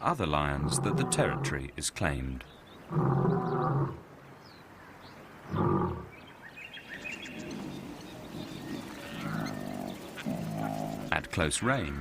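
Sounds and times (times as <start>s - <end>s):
lion roaring: 0.5s - 1.5s, 2.9s - 4.0s, 5.5s - 6.1s, 9.0s - 11.2s
lion low calls: 0.5s - 1.6s, 2.9s - 4.0s, 5.5s - 6.1s, 8.4s - 11.2s.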